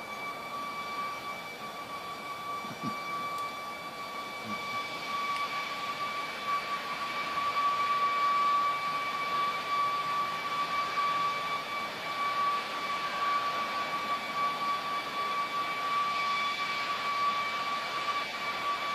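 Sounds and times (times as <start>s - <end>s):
loud steady whining drone: 0.0s - 18.9s.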